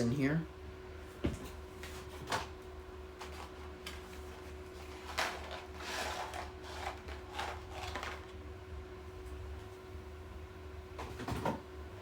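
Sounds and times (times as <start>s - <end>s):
paper packaging rustling: 4.8s - 8.3s.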